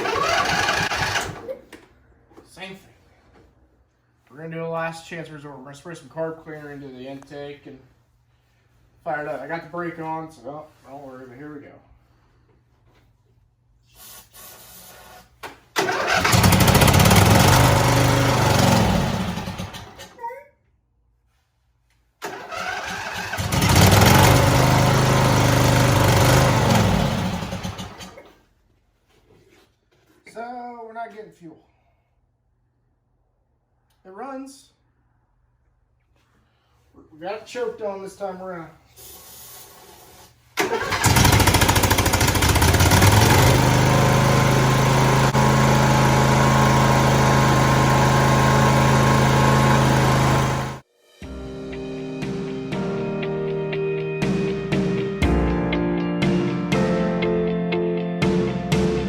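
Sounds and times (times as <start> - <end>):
mower engine starting and dying: 0.0 - 1.6, 15.7 - 20.2, 22.2 - 28.4, 40.6 - 50.8.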